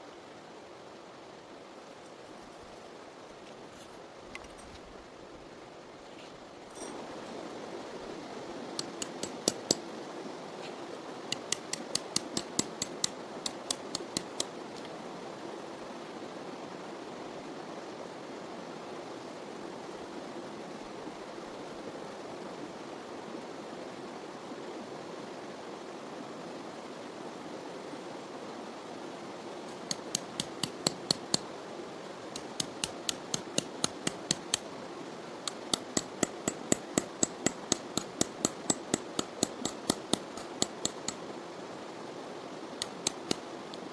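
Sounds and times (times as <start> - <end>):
quick sharp taps: 8.8 - 9.8, 10.6 - 14.9, 29.7 - 31.5, 32.3 - 34.7, 35.5 - 41.2, 42.8 - 43.9.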